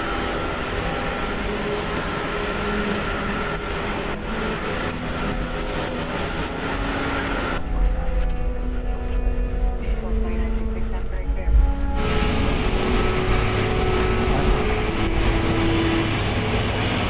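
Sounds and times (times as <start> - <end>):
aircraft cockpit rumble and hiss: 0.0 - 17.0
faint steady tones: 0.0 - 17.0.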